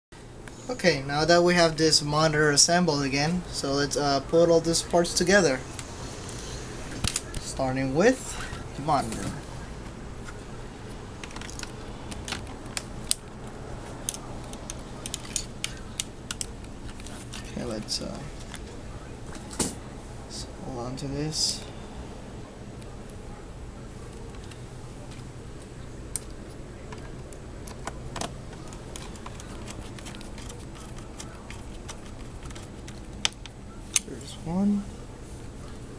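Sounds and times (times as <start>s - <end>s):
steady low hum: 0.1s - 35.9s
parts clattering: 11.1s - 18.7s
laptop parts clicking and tapping: 13.9s - 17.4s, 26.1s - 34.1s.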